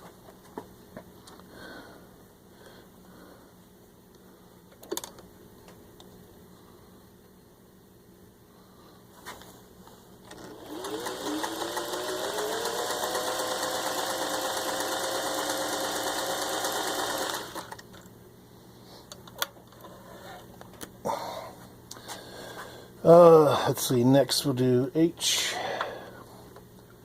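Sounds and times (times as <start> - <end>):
sewing machine stitching: 10.3 - 17.8.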